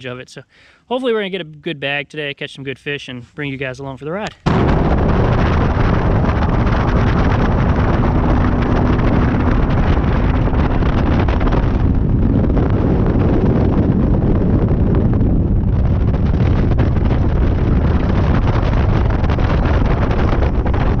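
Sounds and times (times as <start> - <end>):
wind buffeting microphone: 4.4 - 21.0
outboard engine hum: 4.5 - 21.0.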